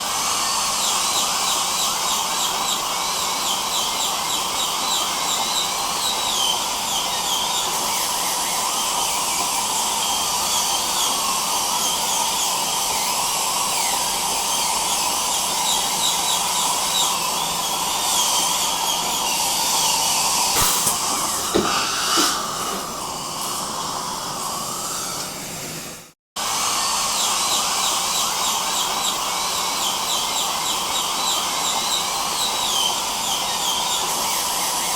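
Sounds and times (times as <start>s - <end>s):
dental drill whining: 0.0s - 34.9s
suction hiss: 18.8s - 26.1s.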